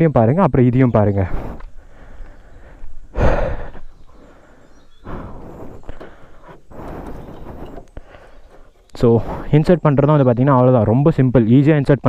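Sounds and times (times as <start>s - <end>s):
metal scraping and rubbing: 5.4s - 9.4s.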